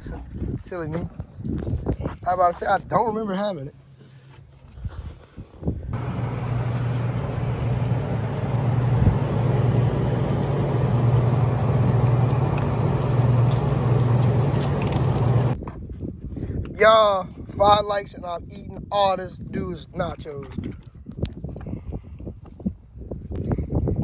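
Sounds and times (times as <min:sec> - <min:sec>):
engine running with low hum: 0:06.0 - 0:15.6.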